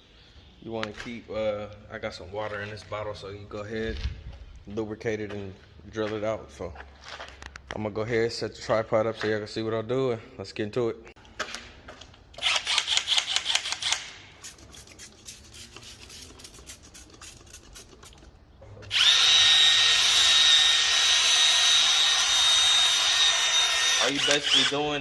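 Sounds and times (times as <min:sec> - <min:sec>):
drill whining: 0:18.9 - 0:25.0.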